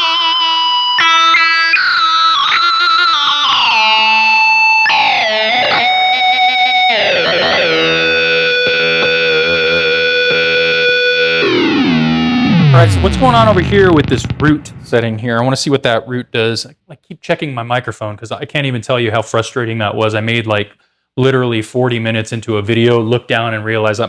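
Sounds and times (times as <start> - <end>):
buzzy synth-like electric guitar: 0.0 - 14.9.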